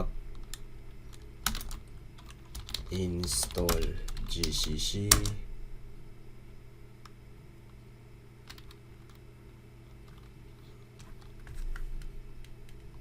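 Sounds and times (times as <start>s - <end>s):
steady low hum: 0.0s - 13.0s
keyboard keystrokes clicking: 0.4s - 5.4s, 8.5s - 9.2s.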